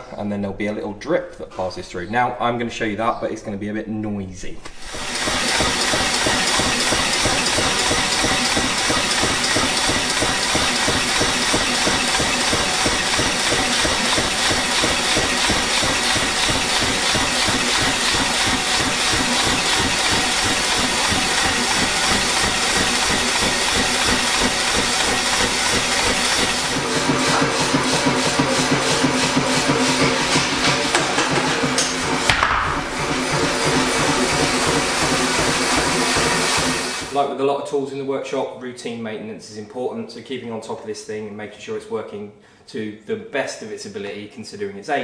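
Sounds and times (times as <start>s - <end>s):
air compressor pumping: 4.7s - 37.2s
power hammer running: 4.8s - 37.2s.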